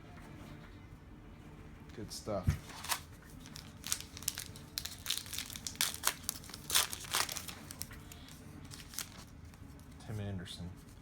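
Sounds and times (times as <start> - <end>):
wrapper tearing and crinkling: 2.8 - 9.3.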